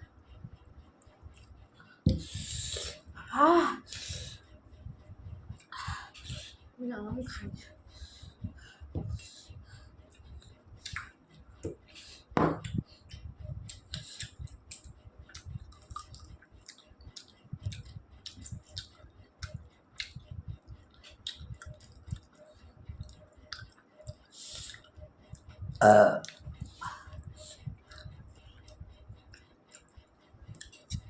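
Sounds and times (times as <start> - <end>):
wet chewing and lip-smacking: 10.8 - 11.2, 12.6 - 31.0.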